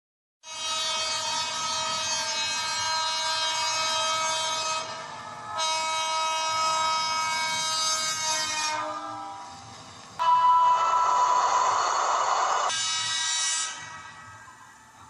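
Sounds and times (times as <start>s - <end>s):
train horn chord: 0.4s - 11.4s.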